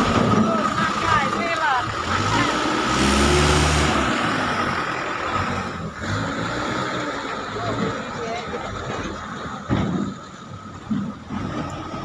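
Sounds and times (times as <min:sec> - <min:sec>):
truck engine rumbling: 0:00.0 - 0:12.0
rattling noise: 0:07.5 - 0:12.0.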